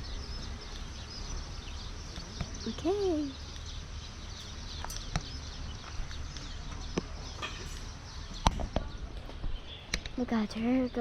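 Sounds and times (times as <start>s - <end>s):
faint bird chirps: 0.0s - 11.0s.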